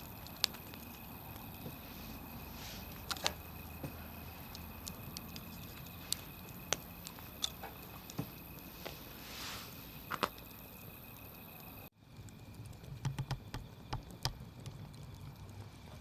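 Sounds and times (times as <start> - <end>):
soft hiss: 0.0 - 12.7
campfire crackling and popping: 0.0 - 16.0.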